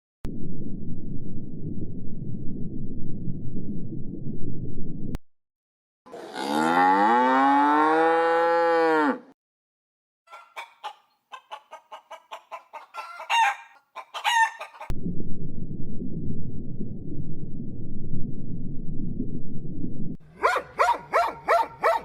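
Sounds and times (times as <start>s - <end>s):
low rumbling noise: 0.2s - 5.2s, 14.9s - 20.2s
chicken clucking and squawking: 10.3s - 14.9s.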